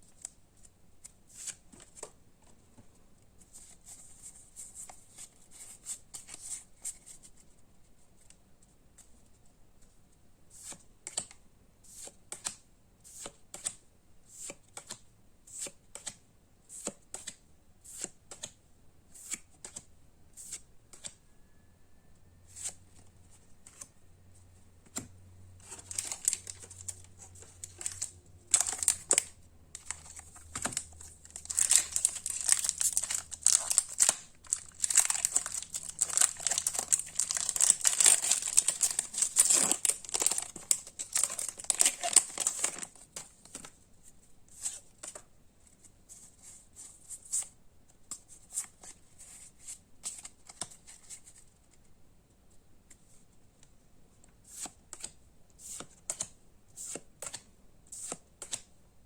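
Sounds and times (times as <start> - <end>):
plastic wrapping crinkling: 25.7 - 43.0.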